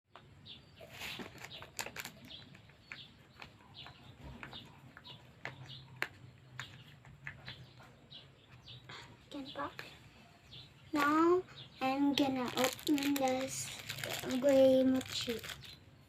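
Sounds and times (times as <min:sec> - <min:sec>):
small birds chirping: 0:00.1 - 0:16.0.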